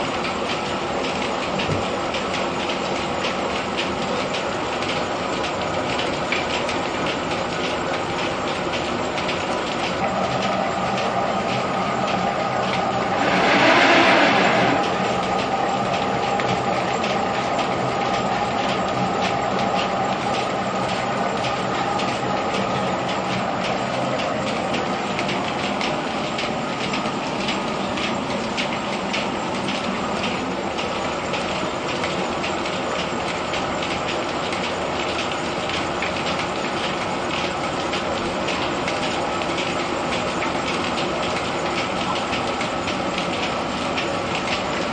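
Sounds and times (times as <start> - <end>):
grain pouring into machine: 0.1 - 44.9
threshing machine rattling: 9.4 - 17.2.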